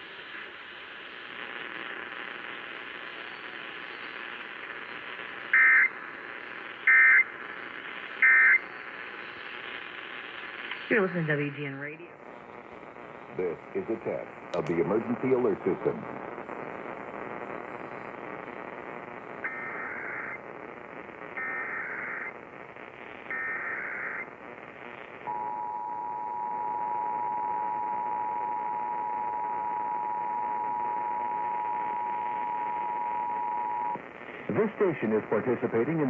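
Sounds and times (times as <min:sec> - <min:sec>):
radio hiss: 0:00.0 - 0:36.0
digital header data bursts: 0:19.4 - 0:20.4, 0:21.2 - 0:22.4, 0:23.2 - 0:24.3
two-tone attention signal: 0:25.3 - 0:34.0.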